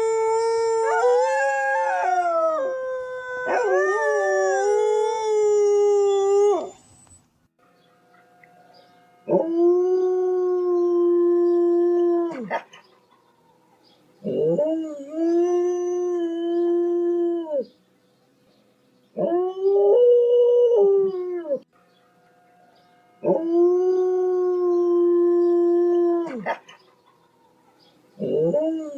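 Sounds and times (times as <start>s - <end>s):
dog howling: 0.0s - 6.8s, 23.2s - 26.6s, 28.2s - 28.9s.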